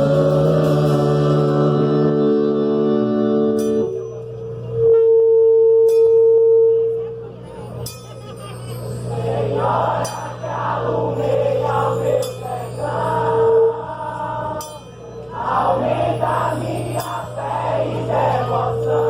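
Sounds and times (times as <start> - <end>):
music with voices singing: 0.0 - 3.7, 9.0 - 19.0.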